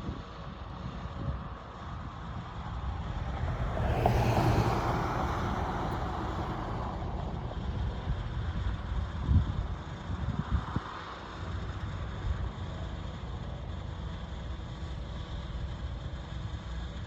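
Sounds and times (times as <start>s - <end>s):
steady low rumble: 1.4s - 10.7s
vehicle passing by: 2.1s - 9.5s.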